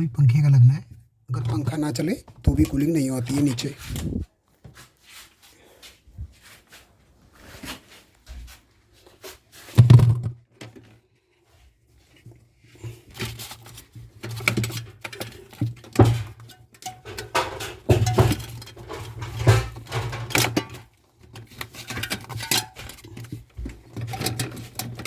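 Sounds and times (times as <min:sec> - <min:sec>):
metal tools clinking: 0:21.8 - 0:23.2.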